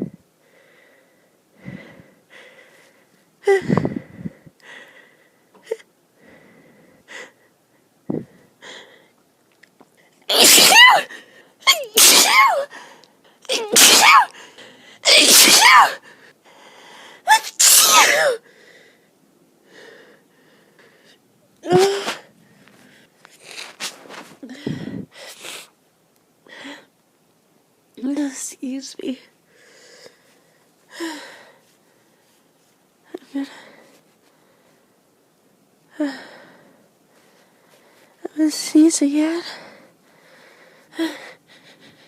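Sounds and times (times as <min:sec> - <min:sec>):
woman sneezing: 0:10.3 - 0:11.1, 0:11.7 - 0:12.7, 0:13.5 - 0:14.4, 0:15.0 - 0:16.0, 0:17.3 - 0:18.4, 0:21.7 - 0:22.3
faint sniffs and breaths: 0:21.8 - 0:25.8, 0:29.5 - 0:35.0, 0:36.0 - 0:38.2, 0:39.4 - 0:42.0.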